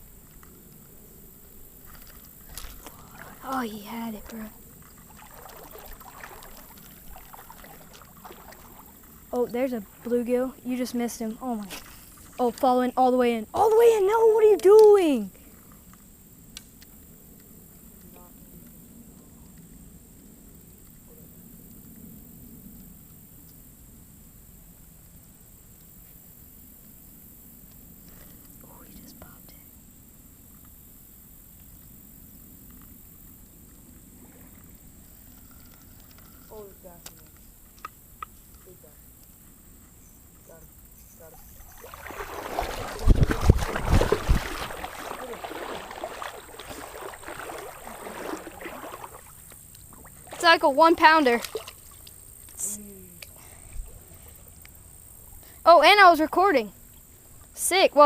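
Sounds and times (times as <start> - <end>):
water splashing and sloshing: 0.0 - 16.0, 41.2 - 52.6
light ticks: 15.7 - 21.0.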